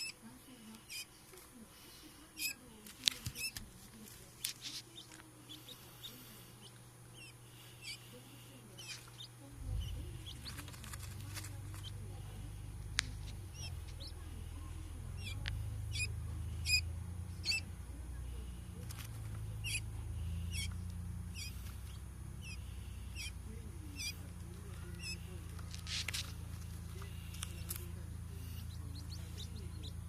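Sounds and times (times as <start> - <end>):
quail chick peeping: 0.0 - 30.0
low rumble: 9.5 - 14.6.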